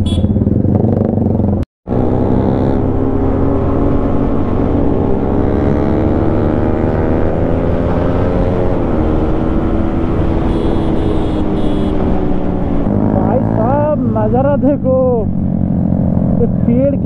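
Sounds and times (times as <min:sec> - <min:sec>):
motorcycle engine accelerating: 0:00.0 - 0:17.0
wind and road noise: 0:00.0 - 0:17.0.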